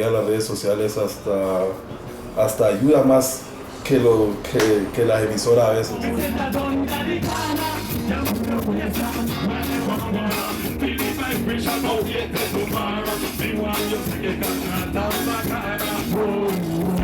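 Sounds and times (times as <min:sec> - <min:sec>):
song with singing over beat: 0:05.7 - 0:17.0.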